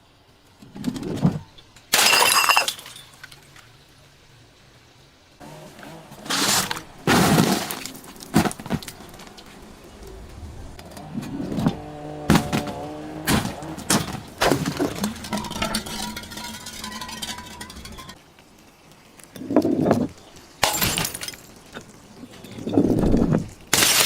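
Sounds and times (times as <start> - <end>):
glass bottles smashing: 1.9 - 3.6, 12.3 - 18.2, 20.6 - 21.6, 23.7 - 24.0.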